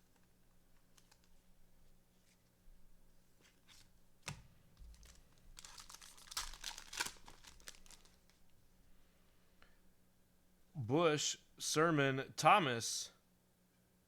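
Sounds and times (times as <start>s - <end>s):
foil wrapper crinkling and tearing: 4.8s - 8.5s.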